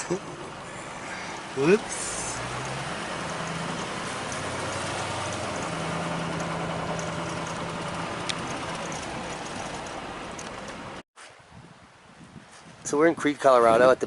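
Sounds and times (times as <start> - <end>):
road noise rushing: 0.0 - 11.0
vehicle engine humming: 0.0 - 11.0.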